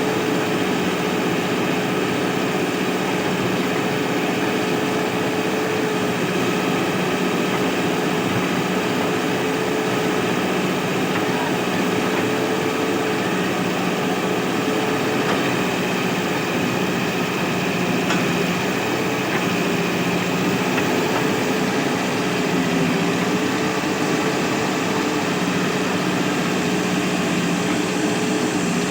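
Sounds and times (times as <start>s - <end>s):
diesel engine running: 0.0s - 28.9s.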